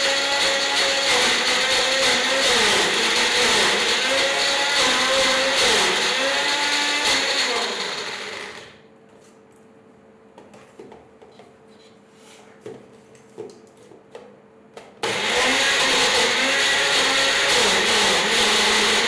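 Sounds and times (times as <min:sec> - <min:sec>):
mixer grinder motor whine: 0:00.0 - 0:08.8, 0:15.0 - 0:19.0.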